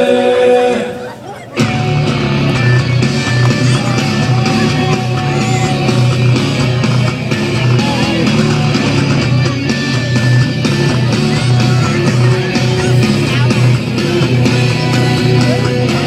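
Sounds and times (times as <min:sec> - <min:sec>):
heavy metal music with electric guitars: 0:01.6 - 0:16.0.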